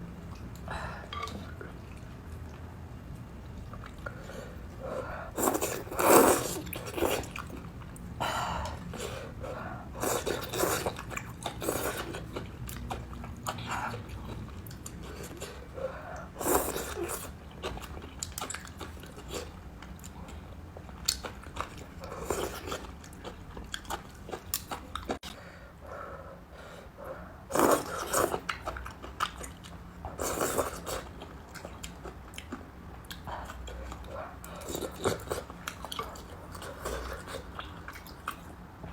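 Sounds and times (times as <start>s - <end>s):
person chewing noodles: 3.5s - 25.4s, 27.5s - 38.9s.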